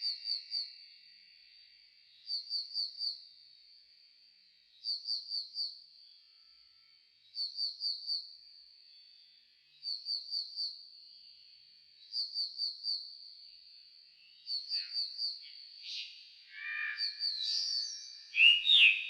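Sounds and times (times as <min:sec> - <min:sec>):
slowed nightingale song: 0:07.2 - 0:11.4, 0:12.0 - 0:19.0.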